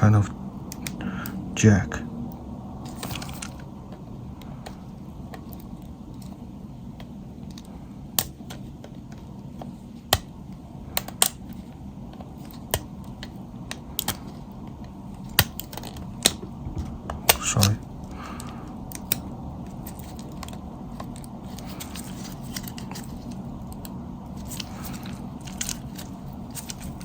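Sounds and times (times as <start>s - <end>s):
low background hum: 0.0s - 27.0s.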